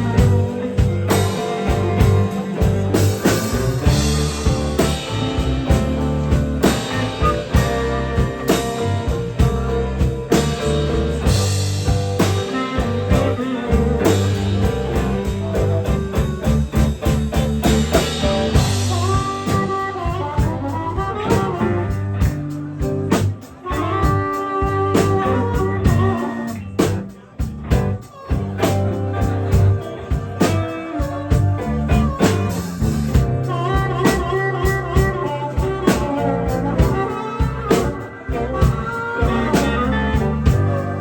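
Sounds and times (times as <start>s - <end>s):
electric guitar lead: 0.0s - 41.0s
live blues band playing: 0.0s - 41.0s.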